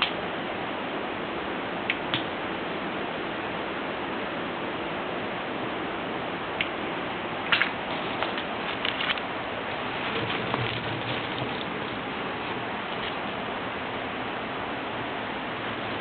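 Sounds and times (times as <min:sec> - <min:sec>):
steady hiss: 0:00.0 - 0:16.0
campfire crackling and popping: 0:07.4 - 0:13.6.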